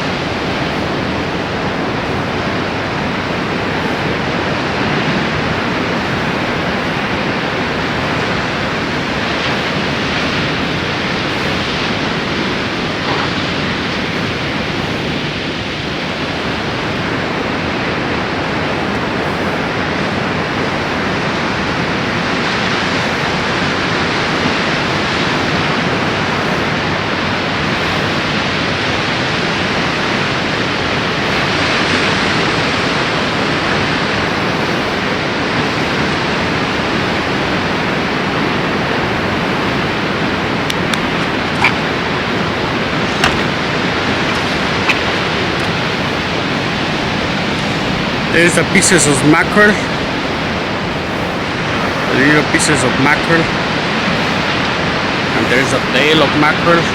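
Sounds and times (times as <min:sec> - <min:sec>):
rushing sea noise: 0:00.0 - 0:56.9.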